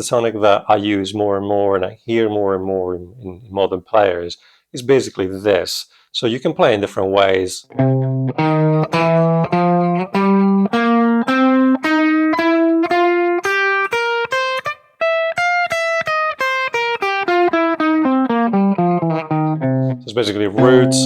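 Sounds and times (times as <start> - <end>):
guitar picking single notes: 7.6 - 21.0.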